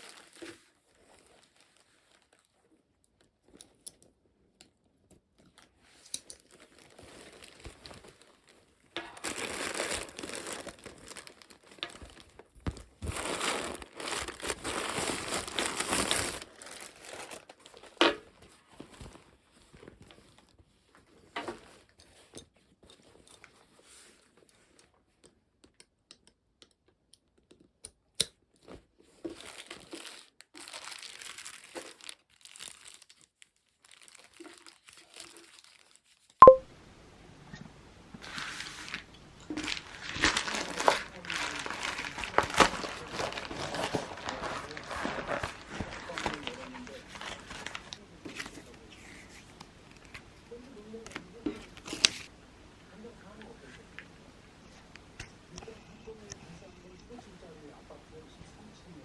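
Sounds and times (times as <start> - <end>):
packaging crinkling and rustling: 0.0 - 4.1, 5.3 - 24.8, 28.5 - 36.4, 38.2 - 52.3.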